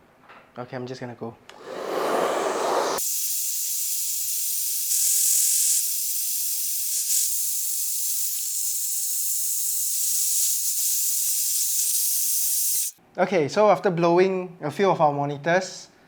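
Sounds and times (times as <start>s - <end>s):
hairdryer blowing: 1.5s - 3.1s.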